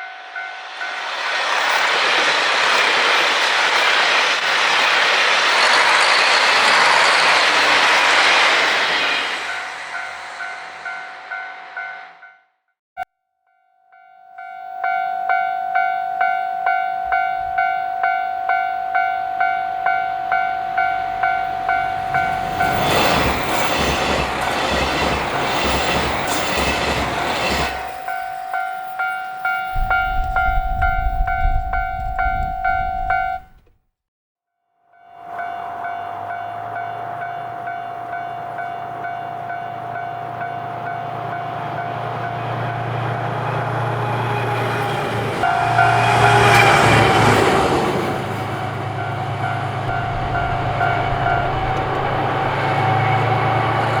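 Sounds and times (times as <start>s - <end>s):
train wheels clacking on rails: 0.0s - 12.2s, 20.3s - 33.7s, 38.0s - 54.0s
low engine hum: 29.8s - 33.6s, 49.9s - 53.1s.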